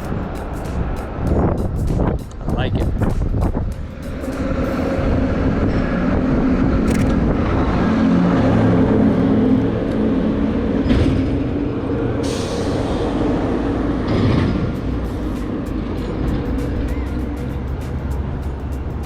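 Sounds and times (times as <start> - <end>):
vehicle engine rumbling: 0.0 - 19.0
brief clicks: 6.8 - 7.3
hiss: 12.2 - 13.6.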